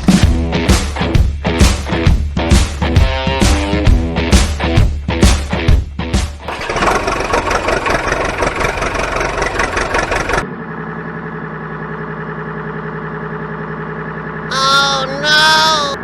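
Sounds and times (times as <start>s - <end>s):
vehicle engine running rough: 6.4s - 16.0s.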